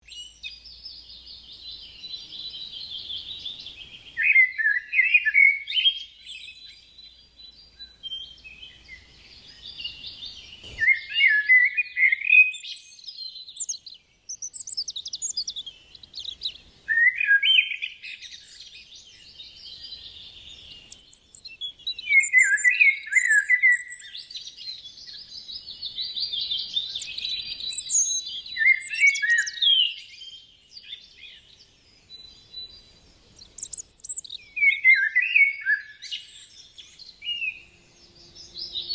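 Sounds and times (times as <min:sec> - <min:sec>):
birds chirping and singing: 0:00.0 - 0:38.9.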